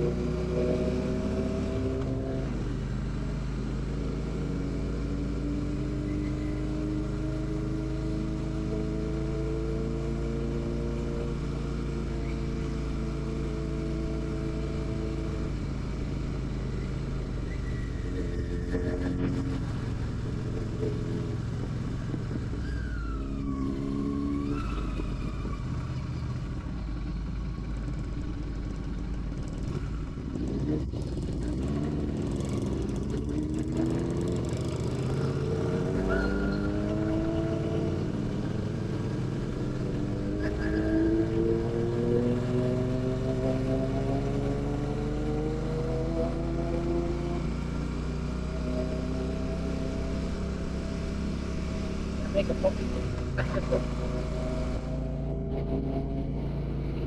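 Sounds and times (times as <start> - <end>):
motorcycle engine running: 25.1 - 35.5.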